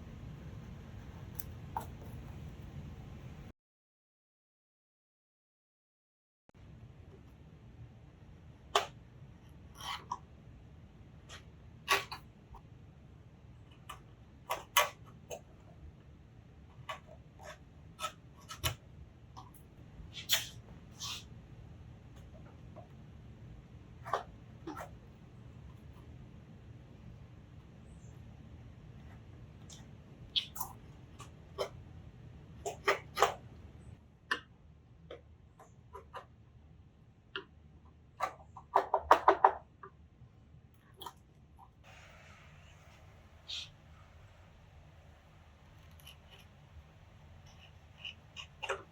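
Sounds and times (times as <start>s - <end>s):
chisel scraping wood: 45.6s - 48.9s.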